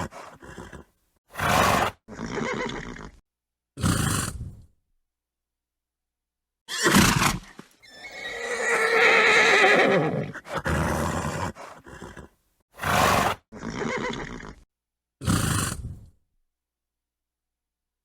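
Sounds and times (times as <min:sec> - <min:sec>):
horse neighing: 0:00.0 - 0:03.2, 0:06.7 - 0:12.3, 0:12.9 - 0:14.6
horse snorting: 0:00.0 - 0:03.2, 0:03.8 - 0:04.6, 0:06.8 - 0:14.6, 0:15.2 - 0:16.1.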